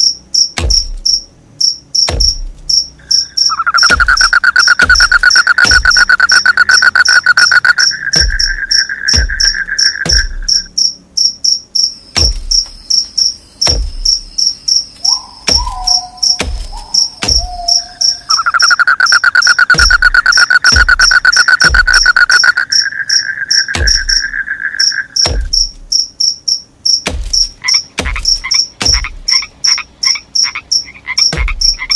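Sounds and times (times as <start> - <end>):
cricket fast-pulsed trill: 0.0 - 31.9
high repeating insect chirp: 0.0 - 31.9
sharp knocks: 0.6 - 1.2, 2.0 - 2.6, 3.8 - 10.7, 12.2 - 12.8, 13.6 - 14.3, 15.5 - 17.8, 19.1 - 22.5, 23.7 - 24.3, 25.2 - 25.8, 27.0 - 29.4, 31.3 - 31.9.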